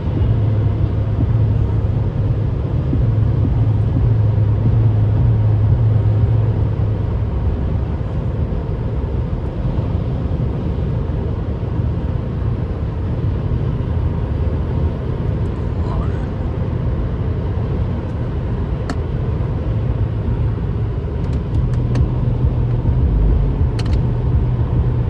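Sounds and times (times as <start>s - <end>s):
car engine and tyre drone: 0.0s - 25.0s.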